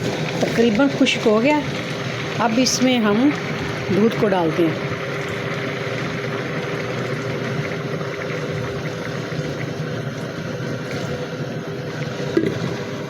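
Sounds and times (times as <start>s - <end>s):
milk pouring into a pot: 0.0s - 13.0s.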